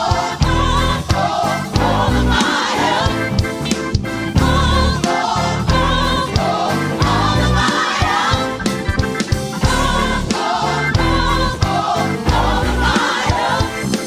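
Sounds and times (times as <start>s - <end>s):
gospel choir singing: 0.0s - 14.0s
live band with bass keyboard drums: 0.0s - 14.0s.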